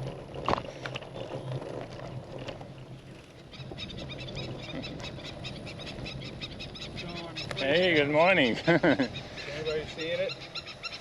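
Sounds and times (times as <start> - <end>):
birds chirping rapidly: 3.3 - 11.0.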